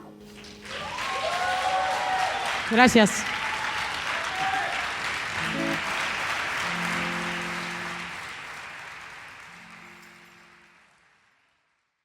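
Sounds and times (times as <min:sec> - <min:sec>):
audience applause: 0:00.3 - 0:11.7
held low instrument notes: 0:05.4 - 0:08.2.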